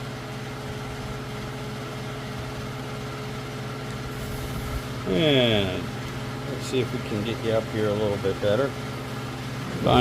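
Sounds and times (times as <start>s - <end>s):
steady mechanical hum: 0.0s - 10.0s.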